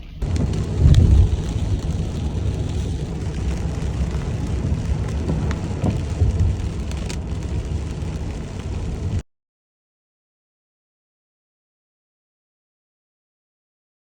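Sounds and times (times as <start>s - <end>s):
car driving on road: 0.0s - 9.2s.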